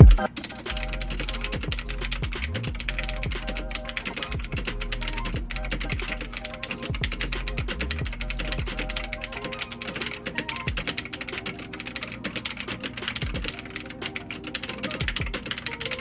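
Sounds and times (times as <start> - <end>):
background music: 0.0 - 16.0
mechanical keyboard typing: 8.3 - 16.0.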